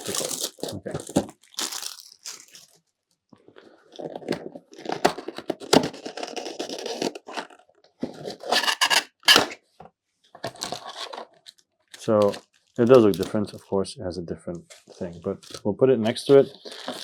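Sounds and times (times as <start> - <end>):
plastic wrap ripping: 0.0 - 2.8, 3.6 - 7.6, 8.3 - 9.6, 10.5 - 13.7, 14.8 - 17.0
plastic wrap crinkling and tearing: 0.0 - 9.6, 10.4 - 13.8, 14.6 - 17.0.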